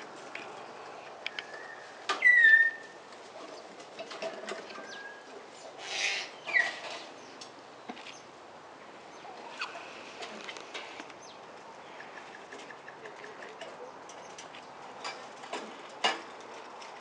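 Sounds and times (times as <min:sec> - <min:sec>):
bird calling: 0:00.5 - 0:03.7, 0:04.6 - 0:08.3, 0:09.0 - 0:14.4.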